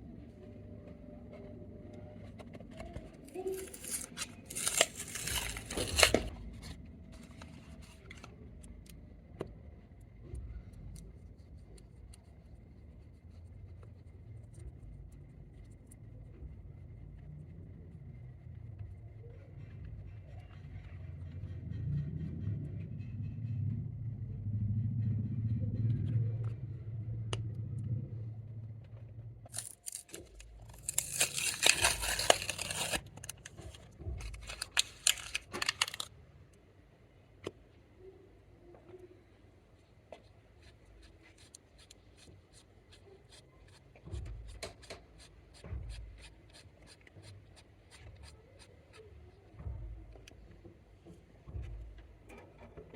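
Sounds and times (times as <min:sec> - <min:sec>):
low hum: 0:00.0 - 0:36.1
low rumble: 0:19.8 - 0:29.6
slime squishing and popping: 0:29.5 - 0:36.1.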